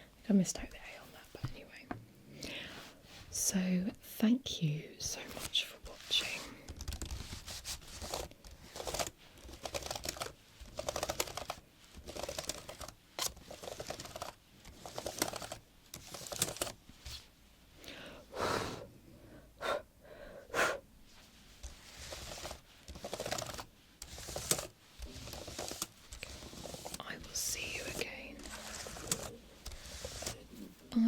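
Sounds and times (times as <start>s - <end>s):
laptop keyboard typing: 6.4s - 16.8s, 21.6s - 30.7s.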